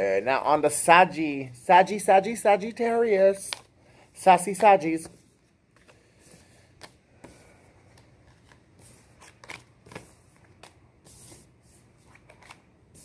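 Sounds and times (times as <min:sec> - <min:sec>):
cards being shuffled: 0:05.0 - 0:13.0.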